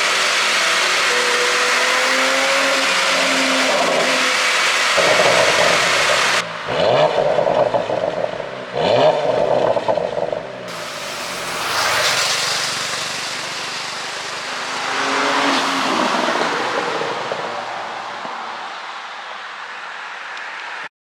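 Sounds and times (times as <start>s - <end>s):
faint engine note: 0.0s - 8.4s, 10.7s - 17.7s
car driving by: 0.0s - 20.9s.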